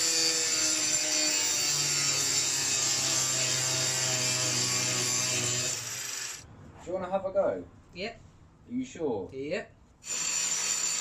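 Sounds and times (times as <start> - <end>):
angle grinder grinding steel: 0.0 - 6.4.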